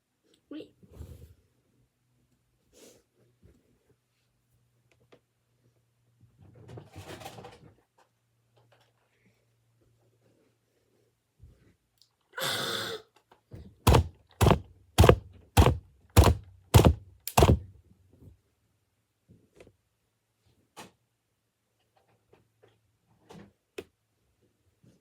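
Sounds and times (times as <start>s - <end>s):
heavy thuds: 13.9s - 17.7s.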